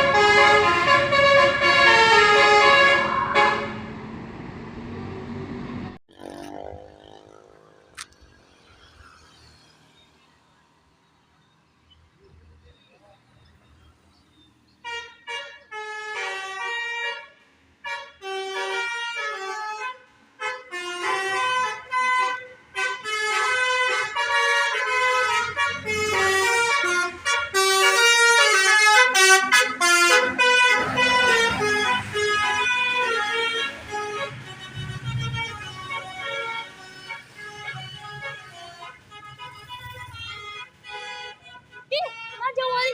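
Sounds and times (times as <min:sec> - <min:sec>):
musical air horns playing tune: 0:00.0 - 0:03.9, 0:14.8 - 0:42.4.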